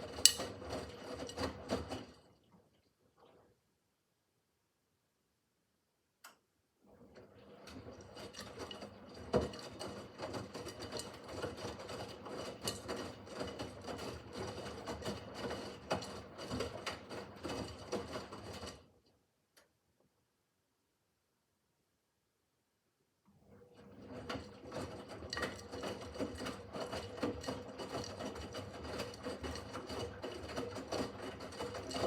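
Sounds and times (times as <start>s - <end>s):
faint click: 6.2s - 6.4s.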